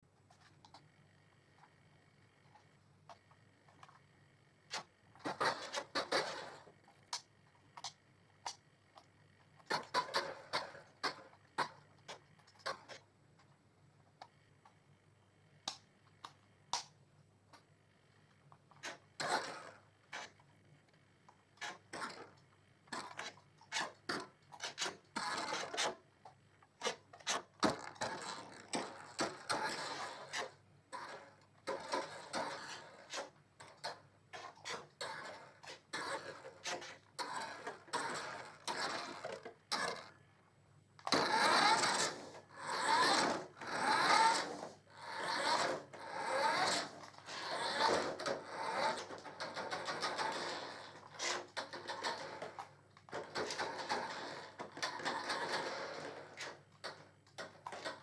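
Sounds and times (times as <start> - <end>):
toy car motor whirring: 18.7 - 20.4, 26.8 - 40.1, 41.1 - 58.0.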